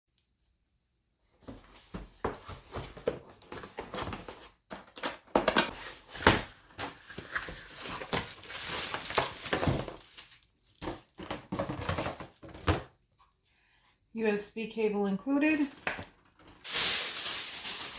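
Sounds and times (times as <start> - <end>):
packaging and plastic parts rustling: 2.3 - 13.3, 15.6 - 17.9.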